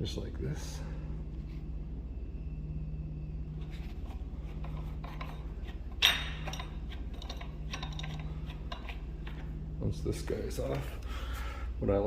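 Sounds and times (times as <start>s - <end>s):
steady low hum: 0.0s - 12.0s
lock hardware clicks and rattles: 4.6s - 9.4s
sharp metal clack: 5.9s - 8.9s.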